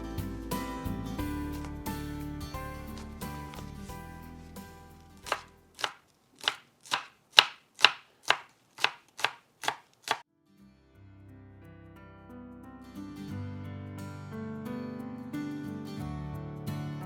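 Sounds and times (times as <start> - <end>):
knife chopping on cutting board: 5.2 - 10.2.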